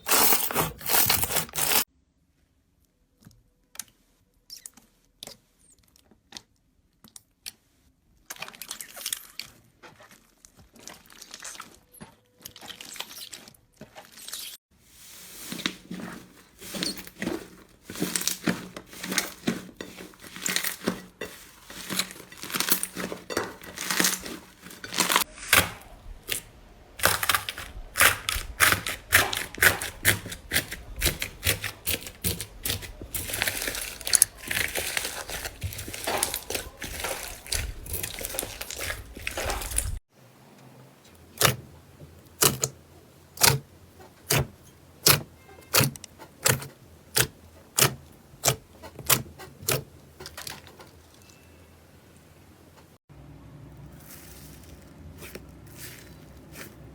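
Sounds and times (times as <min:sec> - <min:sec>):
slime squishing and crackling: 0:08.2 - 0:40.0.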